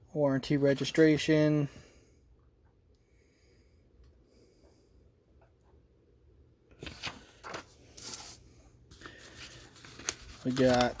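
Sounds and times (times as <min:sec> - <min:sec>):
paper and cardboard rustling: 0:06.8 - 0:11.0.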